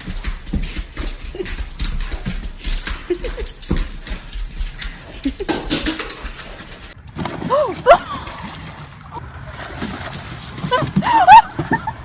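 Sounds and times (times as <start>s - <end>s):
scuffling noises: 0.0s - 7.0s.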